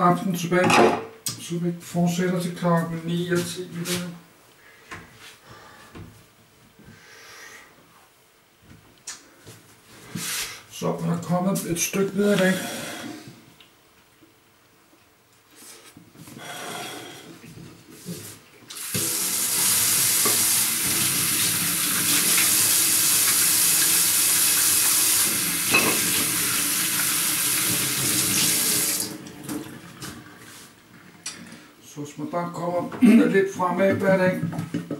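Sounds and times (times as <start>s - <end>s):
water running from a tap: 18.7s - 29.7s.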